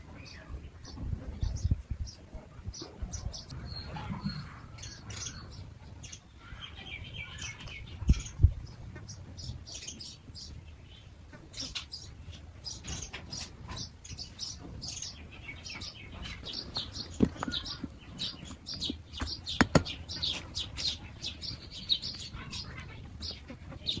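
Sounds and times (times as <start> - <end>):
small birds chirping: 0.0 - 24.0
sharp taps: 16.7 - 21.0.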